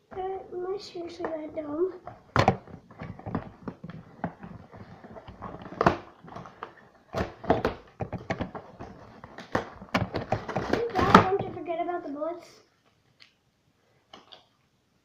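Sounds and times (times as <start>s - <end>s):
rustling: 0.8s - 11.8s
objects knocking and clicking: 1.2s - 11.6s.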